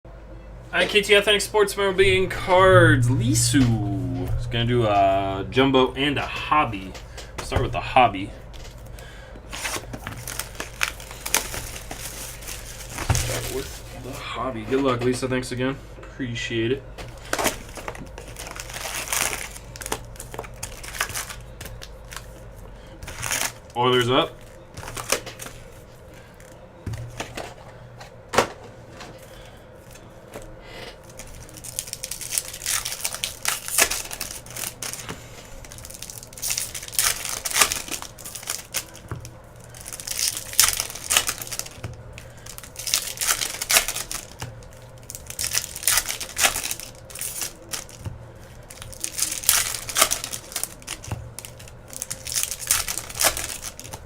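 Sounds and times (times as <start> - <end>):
plastic wrapping tearing and crinkling: 8.5 - 14.2, 17.1 - 27.2, 31.0 - 54.0.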